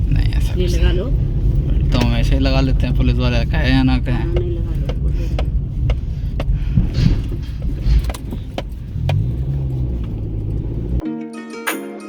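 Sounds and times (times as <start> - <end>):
car engine and road rumble: 0.0 - 11.0
music: 11.0 - 12.0.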